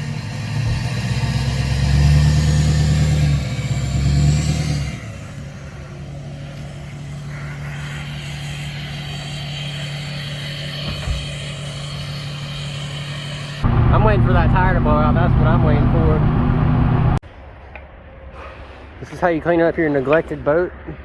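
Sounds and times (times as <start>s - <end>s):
engine revving and running: 0.0s - 5.4s, 13.6s - 17.2s.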